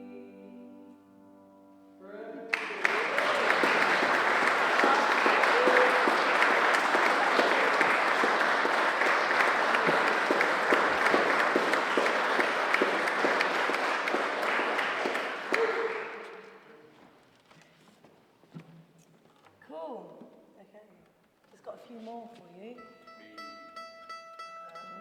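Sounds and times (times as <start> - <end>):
audience applauding: 2.5 - 16.7.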